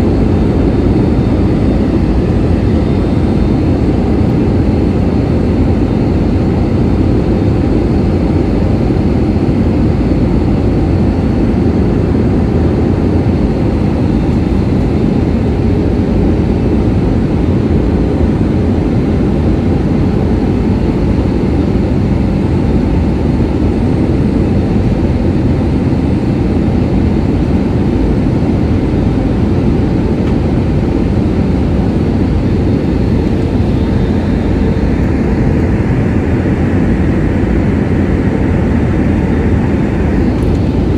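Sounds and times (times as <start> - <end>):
jet airliner cabin roar: 0.0 - 40.9.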